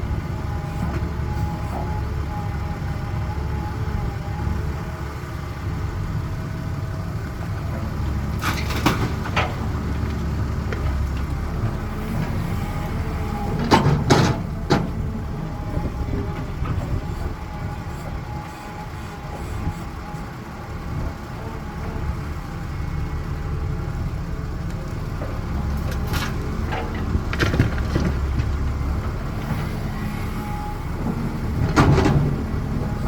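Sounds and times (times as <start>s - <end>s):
excavator diesel engine running: 0.0s - 33.0s
sharp clanks and knocks: 13.5s - 15.0s, 25.9s - 28.6s, 31.6s - 32.5s.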